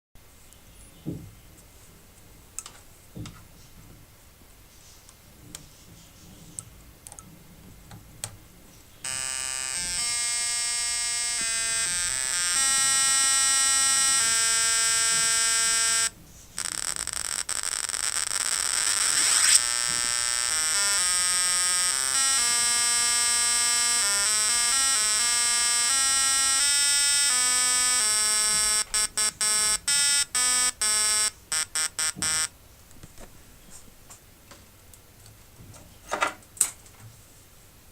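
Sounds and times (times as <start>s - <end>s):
electronic buzzy beeping tones: 9.0s - 32.5s.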